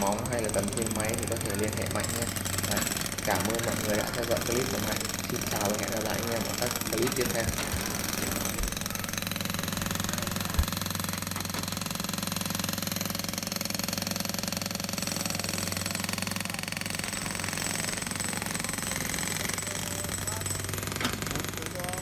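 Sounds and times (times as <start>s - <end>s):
excavator diesel engine rattling: 0.0s - 13.5s.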